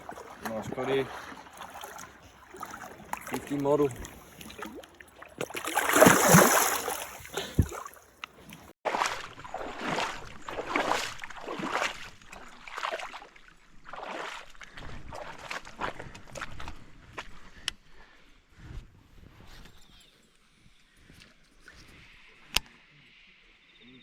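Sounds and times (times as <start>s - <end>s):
water splashing loudly: 0.0s - 8.0s
swishing strokes in water: 0.0s - 15.3s.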